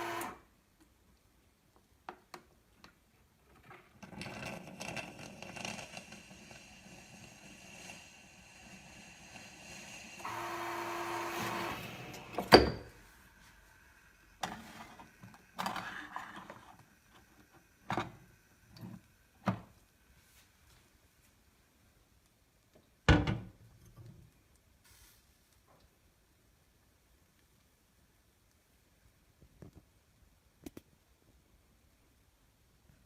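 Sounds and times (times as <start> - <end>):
espresso machine motor whine: 0.0 - 0.4, 4.9 - 12.5
mechanical hum: 4.3 - 20.8.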